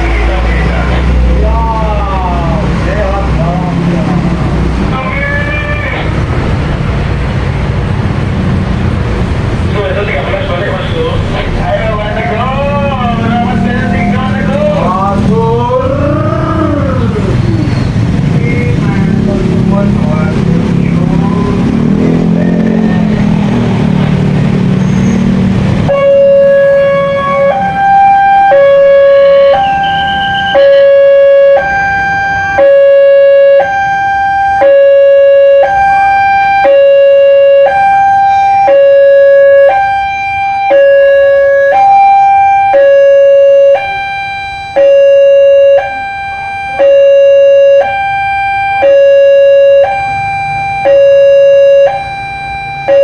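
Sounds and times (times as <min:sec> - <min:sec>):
loud noisy rumble: 0:00.0 - 0:32.8
level crossing two-tone siren: 0:04.9 - 0:06.2, 0:12.0 - 0:18.7, 0:25.8 - 0:53.0.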